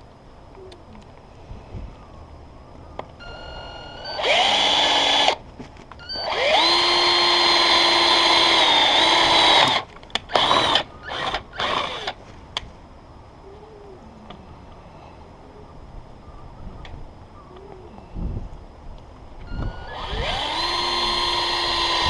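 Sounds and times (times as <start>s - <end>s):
power drill whining: 3.2s - 5.4s, 6.0s - 12.2s, 19.5s - 22.0s.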